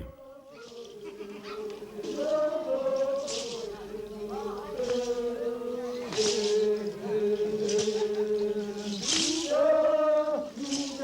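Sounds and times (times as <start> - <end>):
men chanting in long notes: 0.0 - 11.0.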